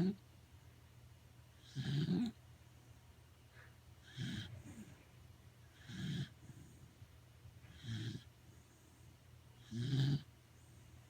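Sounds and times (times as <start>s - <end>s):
dog snoring: 1.6s - 2.4s, 4.0s - 5.0s, 5.7s - 7.0s, 7.6s - 9.0s, 9.6s - 10.3s.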